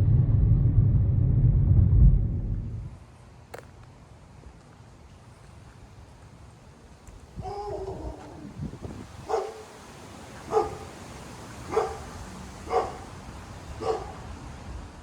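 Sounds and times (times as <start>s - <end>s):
dog barking: 7.4s - 8.3s, 9.2s - 9.7s, 10.5s - 11.0s, 11.7s - 13.2s, 13.8s - 14.3s.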